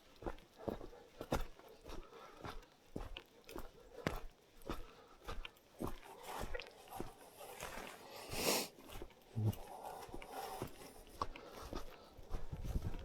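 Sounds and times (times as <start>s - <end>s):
footsteps on wet path: 0.3s - 13.0s
short breathy rush: 8.1s - 8.8s.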